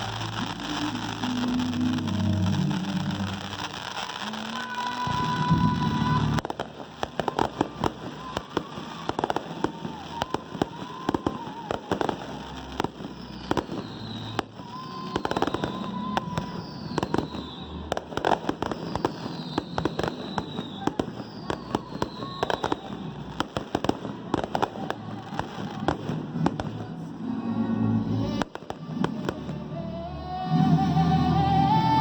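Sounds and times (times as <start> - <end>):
fireworks crackling and popping: 0.0 - 32.0
short falling whistles: 12.4 - 17.8, 18.8 - 23.0.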